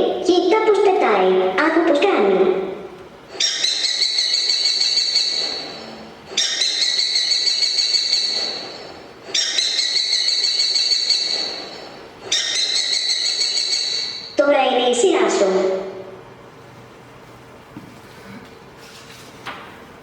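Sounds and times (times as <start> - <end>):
recorded trilling bird call: 3.3 - 14.4.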